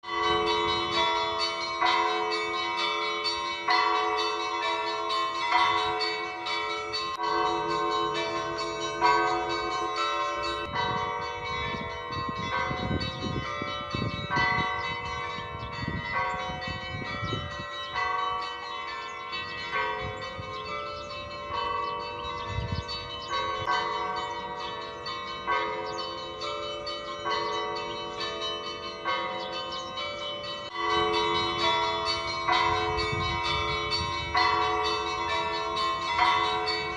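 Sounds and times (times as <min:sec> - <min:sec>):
church bells ringing: 0:00.0 - 0:36.9
lower bell ringing: 0:00.0 - 0:36.9.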